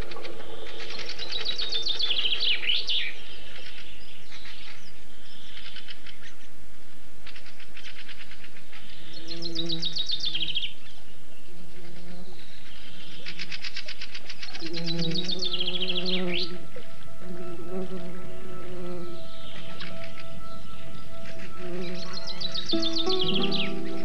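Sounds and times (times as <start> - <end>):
songbird singing: 0.0 - 24.0
short repeated bird notes: 19.2 - 24.0.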